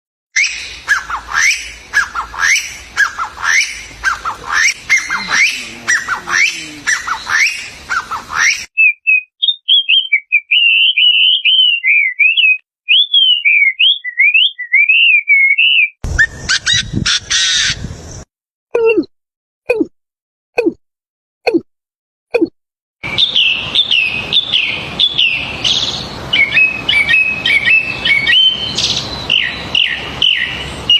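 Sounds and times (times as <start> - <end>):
bird down-slurred chirps: 0.4 - 17.8
warbling whistled birdsong: 0.4 - 18.3, 23.0 - 30.9
background hiss: 1.6 - 8.6.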